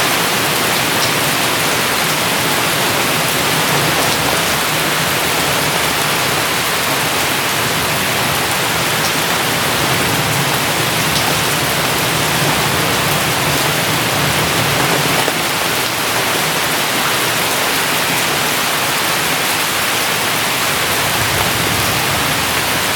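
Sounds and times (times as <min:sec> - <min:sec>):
heavy rain hissing: 0:00.0 - 0:22.9
sharp raindrop ticks: 0:00.4 - 0:18.0.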